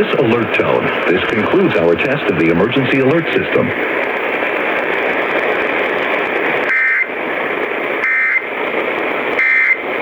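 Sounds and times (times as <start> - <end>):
radio static hiss: 0.0 - 10.0
digital data tone bursts: 8.0 - 8.5, 9.4 - 9.8.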